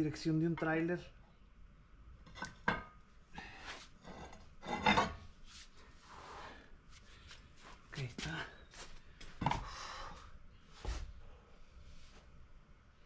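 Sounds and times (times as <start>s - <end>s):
metal pipe scraping and rubbing: 4.0s - 5.3s.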